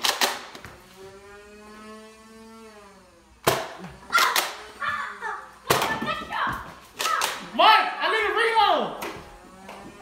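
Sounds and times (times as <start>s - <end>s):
flywheel motors whirring: 0.1s - 3.4s.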